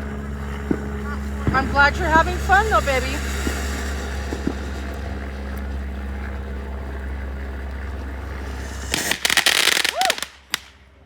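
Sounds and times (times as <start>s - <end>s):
background rumble: 0.0s - 11.0s
crackling firework pops: 0.6s - 6.3s, 8.6s - 10.9s.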